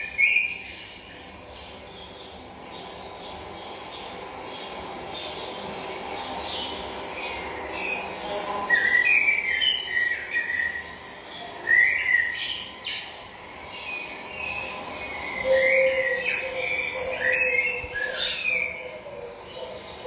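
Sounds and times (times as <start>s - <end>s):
forest birds singing: 0.0s - 20.0s.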